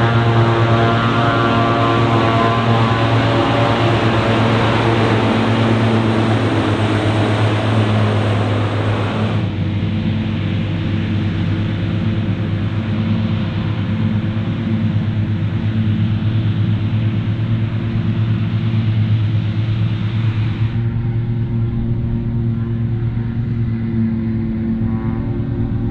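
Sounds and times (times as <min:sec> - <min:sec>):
diesel engine droning: 0:00.0 - 0:25.9.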